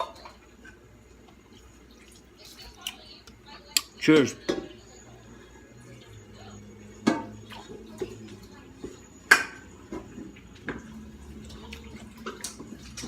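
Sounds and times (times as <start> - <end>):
dishes and cutlery clinking: 6.9 - 13.0.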